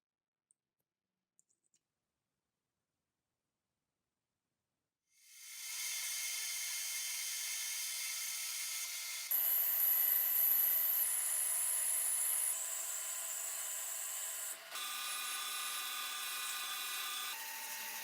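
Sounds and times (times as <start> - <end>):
power tool whining: 5.4 - 18.0.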